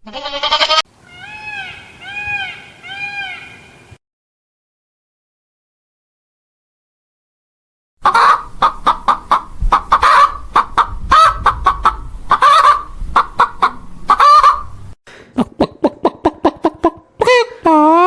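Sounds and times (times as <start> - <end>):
fowl clucking and honking: 0.1 - 3.9, 8.0 - 14.9.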